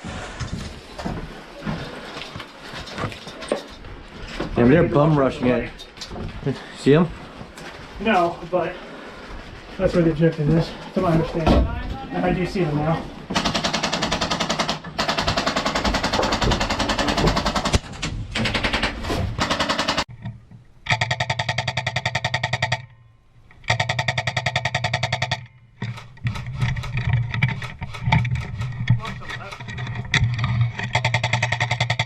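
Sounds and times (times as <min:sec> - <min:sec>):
airsoft gun firing bursts: 0:13.3 - 0:20.1.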